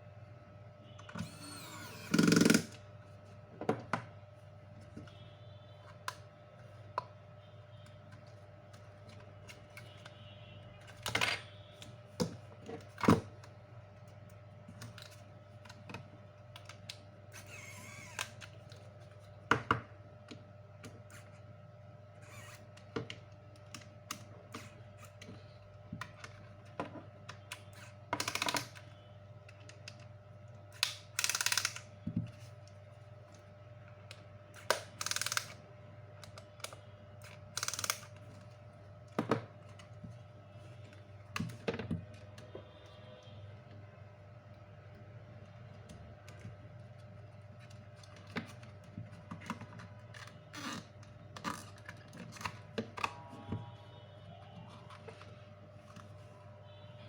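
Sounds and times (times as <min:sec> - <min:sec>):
small parts and tools clicking: 0:30.8 - 0:31.9, 0:34.6 - 0:35.6, 0:36.2 - 0:38.2.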